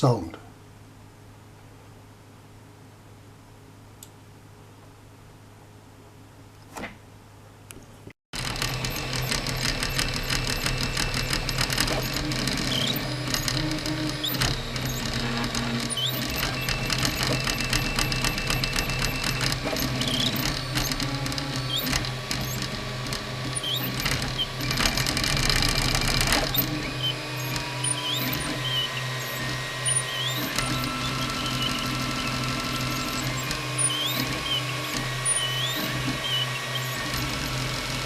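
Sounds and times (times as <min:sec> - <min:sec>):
stepper motors clicking and whirring: 0:08.4 - 0:38.0
three d printer motor hum: 0:08.4 - 0:38.0.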